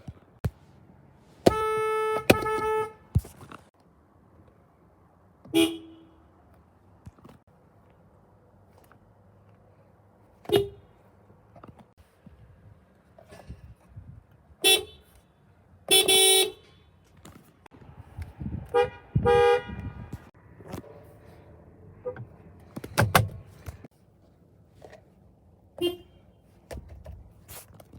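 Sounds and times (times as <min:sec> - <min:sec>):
car horn honking: 0:01.4 - 0:03.2, 0:05.5 - 0:06.2, 0:10.5 - 0:10.9, 0:15.9 - 0:16.8, 0:18.7 - 0:20.2, 0:25.8 - 0:26.2.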